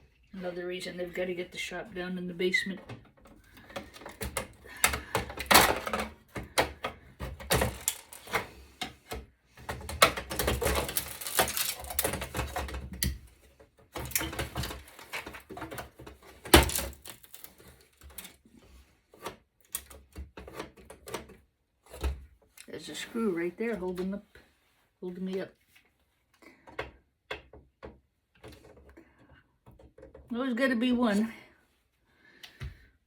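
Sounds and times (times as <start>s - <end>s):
hand tools clicking and scraping metal: 2.6s - 13.2s, 14.0s - 18.4s.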